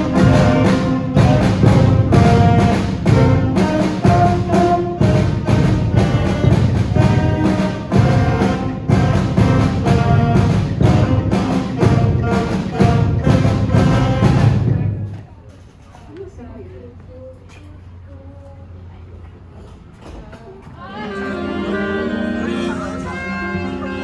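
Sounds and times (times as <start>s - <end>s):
school band playing: 0.0s - 15.3s, 20.9s - 24.0s.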